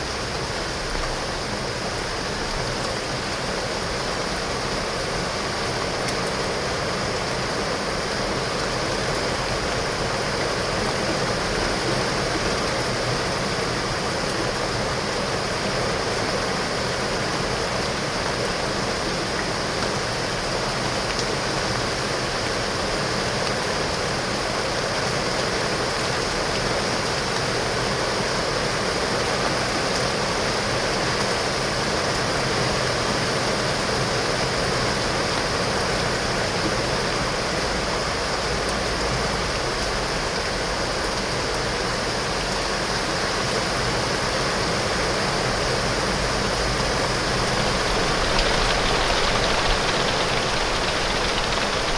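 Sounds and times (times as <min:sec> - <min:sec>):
heavy rain on window glass: 0:45.7 - 0:51.9.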